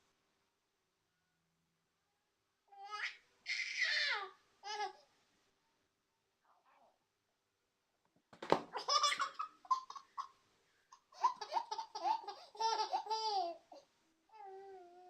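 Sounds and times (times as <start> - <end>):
baby laughing: 8.7 - 10.4, 11.0 - 13.9
baby whining: 11.3 - 15.0.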